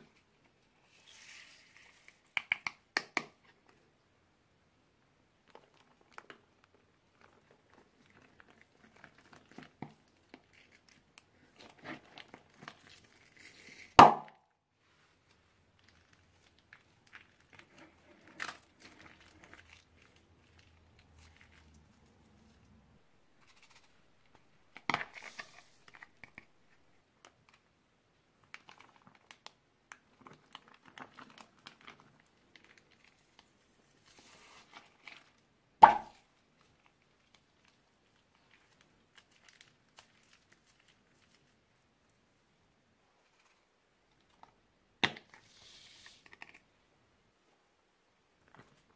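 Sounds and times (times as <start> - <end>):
plastic bags crinkling: 36.6 - 41.5.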